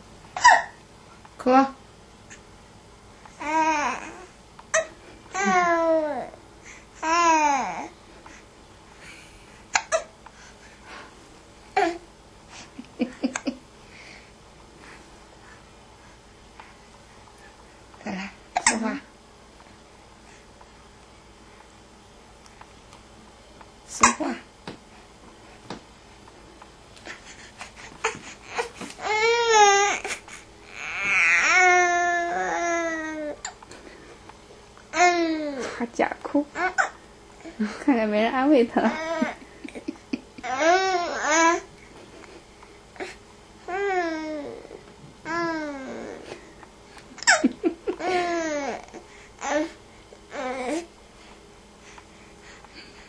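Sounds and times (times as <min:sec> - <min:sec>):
baby hiccuping: 0:00.4 - 0:00.8
baby crying: 0:28.0 - 0:33.4, 0:40.4 - 0:41.6, 0:43.7 - 0:46.2
small baby vocal sounds: 0:43.0 - 0:46.4.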